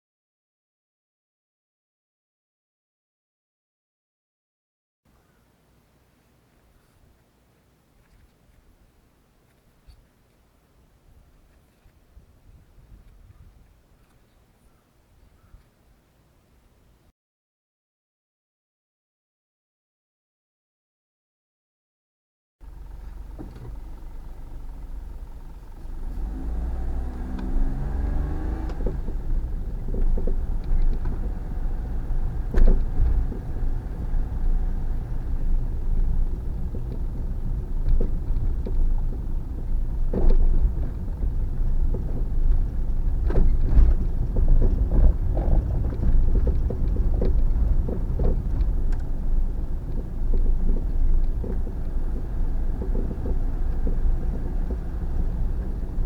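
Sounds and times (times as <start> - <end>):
road rumble: 22.6 - 56.0
suspension knocks: 22.6 - 56.0
van engine revving: 22.6 - 56.0.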